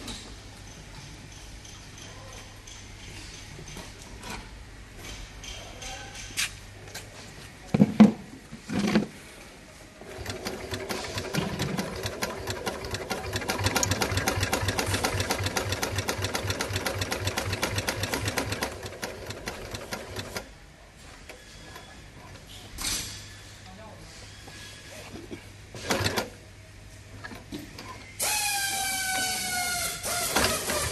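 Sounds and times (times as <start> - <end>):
industrial sewing machine stitching: 10.0 - 20.5, 25.8 - 26.4, 30.0 - 30.9.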